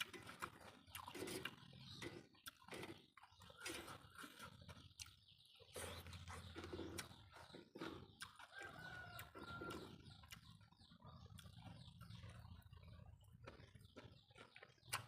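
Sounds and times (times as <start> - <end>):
birds calling: 0.0 - 15.0.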